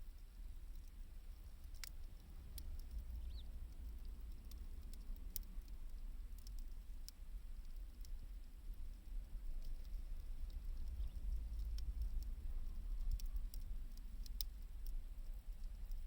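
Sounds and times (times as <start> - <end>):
low steady rumble: 0.0 - 16.0
wood fire crackling: 0.0 - 16.0.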